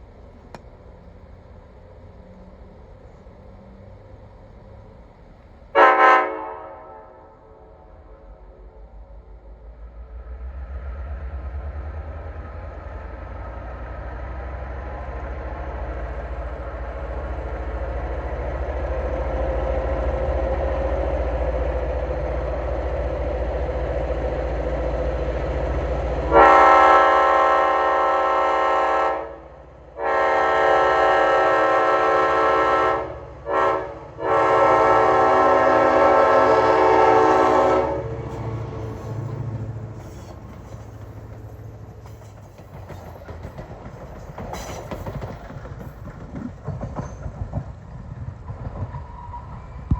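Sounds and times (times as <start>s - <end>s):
diesel locomotive engine rumbling: 0.0s - 49.9s
train horn blasts: 5.7s - 9.0s, 26.3s - 39.2s.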